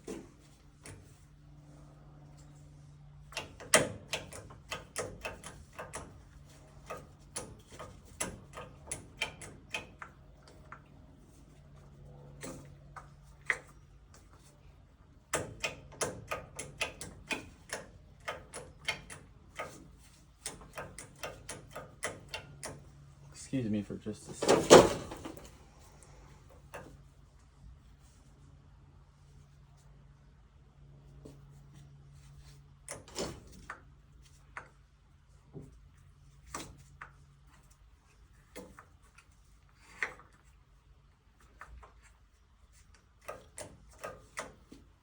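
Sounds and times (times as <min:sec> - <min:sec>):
sharp clicks of pilot controls: 0:02.2 - 0:14.4, 0:15.2 - 0:27.0.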